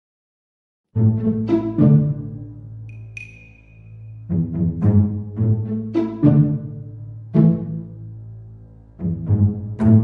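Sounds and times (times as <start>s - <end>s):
struck pitched notes: 2.8s - 4.6s.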